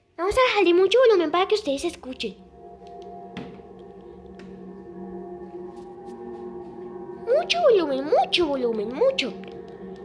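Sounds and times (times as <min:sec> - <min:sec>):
eerie layered drone: 0:01.2 - 0:10.0.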